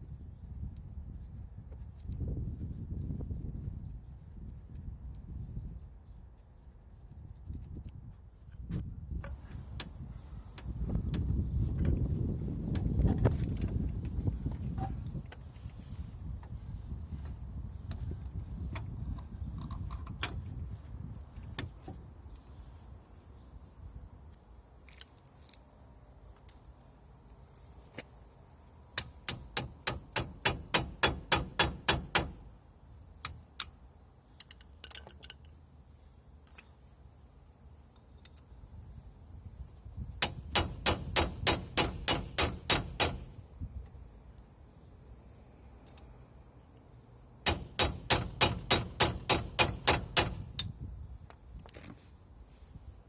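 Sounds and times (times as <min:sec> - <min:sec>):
hammer striking metal: 0:47.4 - 0:50.4.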